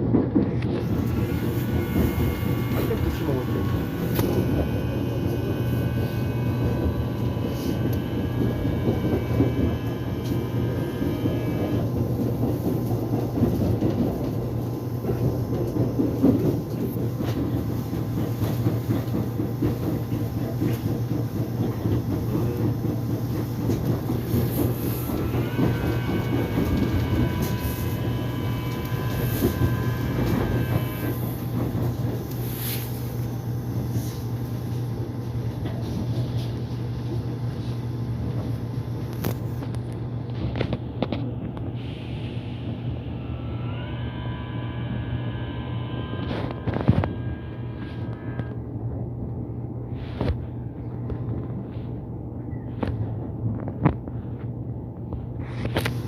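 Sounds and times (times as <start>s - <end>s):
train wheels rumbling on track: 0.0s - 56.0s
electric motor whine: 0.7s - 12.3s, 24.1s - 32.5s, 43.0s - 48.6s.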